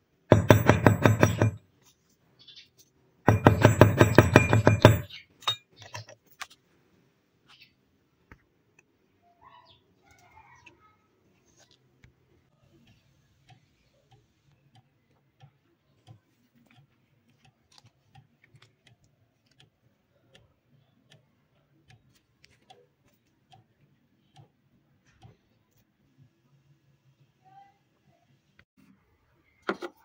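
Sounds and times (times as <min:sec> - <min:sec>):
faint small clicks and taps: 0:10.0 - 0:25.9.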